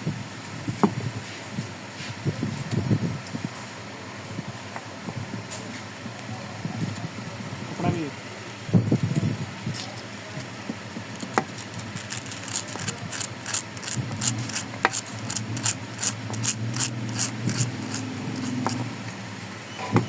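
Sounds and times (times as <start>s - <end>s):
scratchy hand strokes: 11.0s - 18.9s
sharp clicks: 11.1s - 18.9s.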